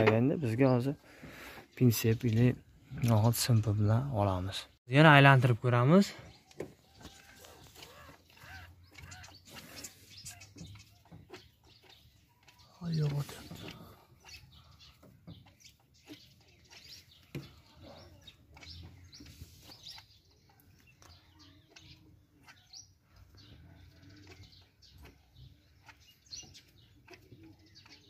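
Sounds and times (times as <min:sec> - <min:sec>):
faint bird chirps: 0:06.0 - 0:28.0.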